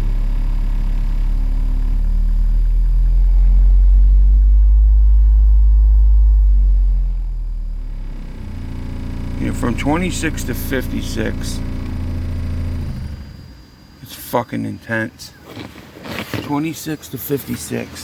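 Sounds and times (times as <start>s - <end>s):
bass-heavy music from subwoofers: 0.0s - 8.1s.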